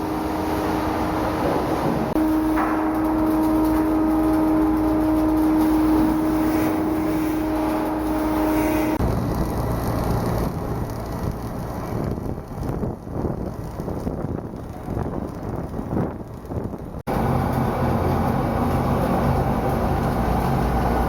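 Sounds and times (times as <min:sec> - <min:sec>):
machinery hum: 0:00.0 - 0:12.4, 0:17.1 - 0:21.0
low rumble: 0:00.0 - 0:15.3.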